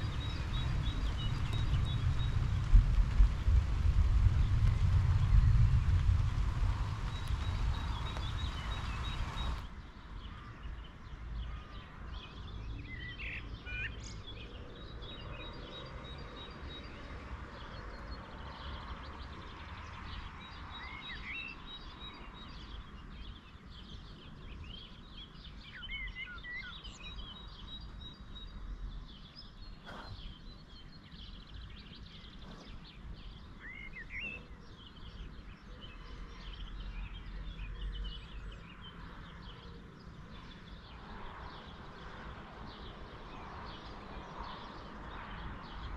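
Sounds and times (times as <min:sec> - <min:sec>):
wind noise: 0:00.0 - 0:10.2
birds chirping: 0:00.0 - 0:45.9.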